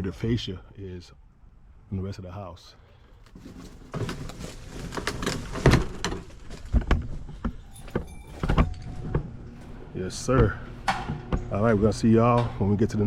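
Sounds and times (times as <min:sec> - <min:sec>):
objects knocking and clattering: 0:03.3 - 0:09.6.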